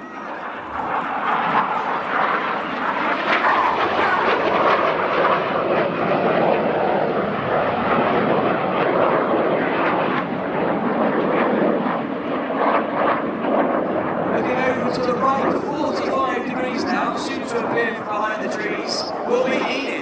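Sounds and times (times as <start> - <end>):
jets flying past: 0.0 - 20.0.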